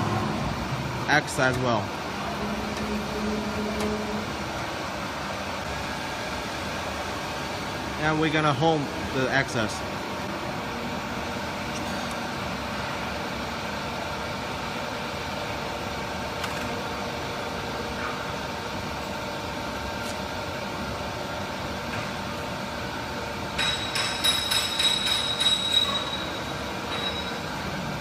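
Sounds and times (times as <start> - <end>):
machine electronics humming: 0.0 - 21.9.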